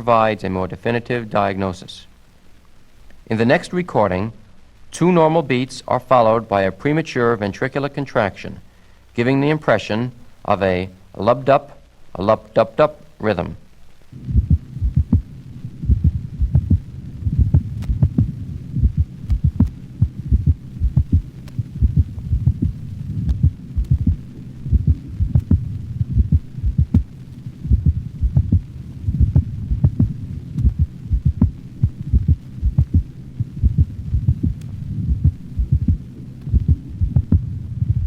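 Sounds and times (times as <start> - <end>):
low steady hum: 0.0 - 38.0
heartbeat through stethoscope: 14.2 - 38.0.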